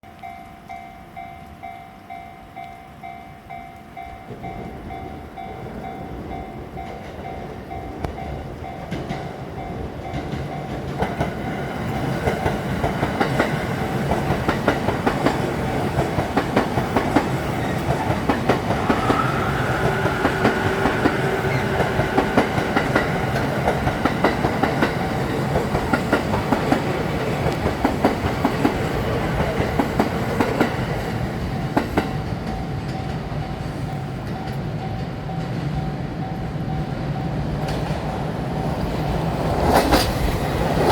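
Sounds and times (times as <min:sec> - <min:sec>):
level crossing warning bell: 0:00.2 - 0:14.6, 0:31.5 - 0:38.0
train wheels clattering over rail joints: 0:10.0 - 0:33.2.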